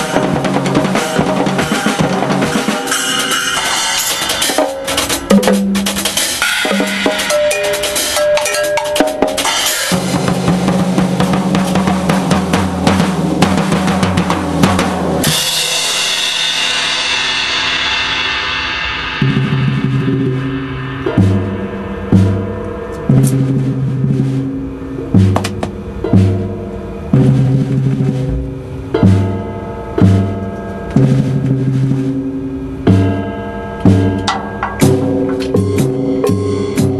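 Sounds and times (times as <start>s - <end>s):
cymbal crash: 0.0s - 36.9s
drum kits and percussion playing: 0.0s - 36.9s
sustained pitched notes: 19.2s - 36.9s.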